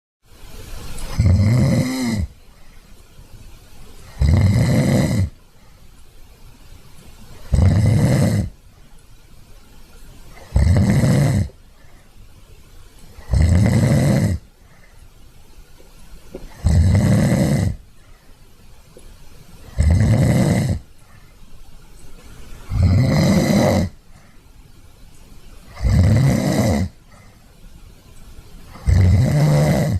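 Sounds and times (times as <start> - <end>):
dog snoring: 1.1 - 2.4, 4.0 - 5.4, 7.4 - 8.6, 10.4 - 11.6, 13.2 - 14.5, 16.4 - 17.8, 19.6 - 20.9, 22.7 - 24.0, 25.7 - 27.3, 28.7 - 29.9.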